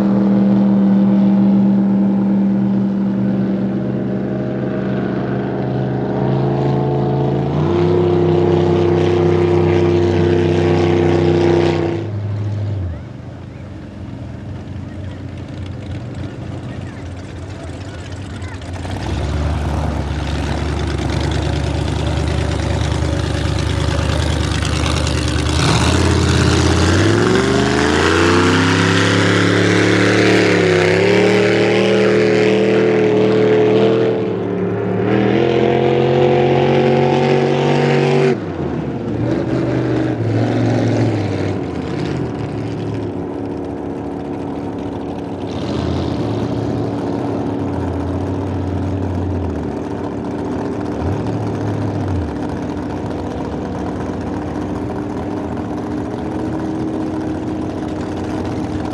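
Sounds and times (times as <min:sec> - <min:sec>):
boat engine revving: 0:00.0 - 0:58.9.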